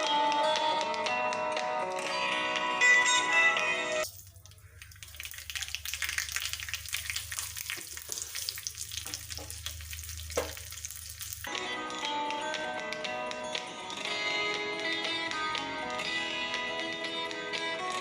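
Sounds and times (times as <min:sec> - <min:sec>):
food sizzling in hot oil: 0:04.0 - 0:11.5.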